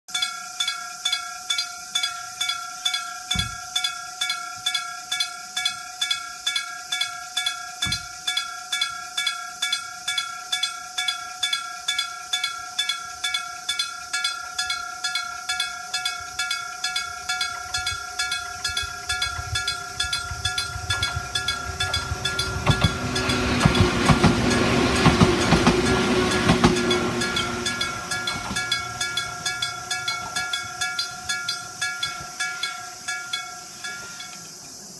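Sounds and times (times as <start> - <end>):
level crossing bell ringing: 14.2 - 34.4
train passing with wheel clacks: 14.6 - 34.6.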